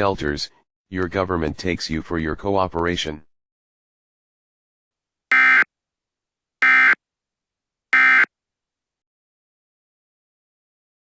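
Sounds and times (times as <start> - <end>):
digital data tone bursts: 5.3 - 5.7, 6.6 - 7.0, 8.0 - 8.3.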